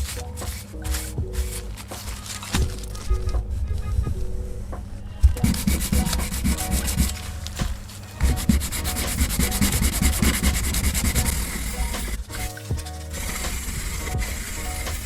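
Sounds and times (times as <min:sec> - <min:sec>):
sanding metal strokes: 0:05.4 - 0:15.0.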